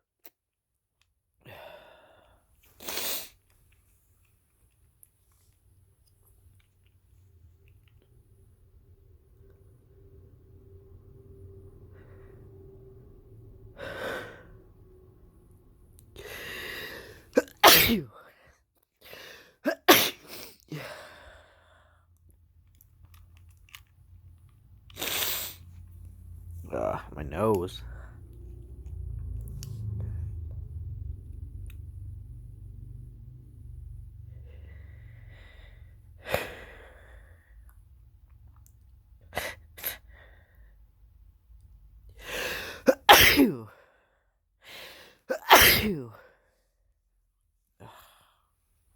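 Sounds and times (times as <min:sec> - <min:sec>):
man sneezing: 0:17.3 - 0:18.2, 0:19.6 - 0:20.9, 0:42.5 - 0:43.7, 0:45.3 - 0:46.2
man gasping before sneeze: 0:19.0 - 0:21.3.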